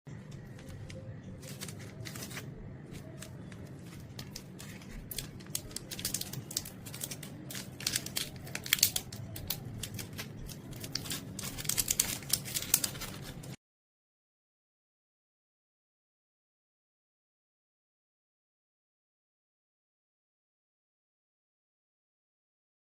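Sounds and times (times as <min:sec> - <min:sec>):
wrapper crinkling and tearing: 0:00.3 - 0:13.6.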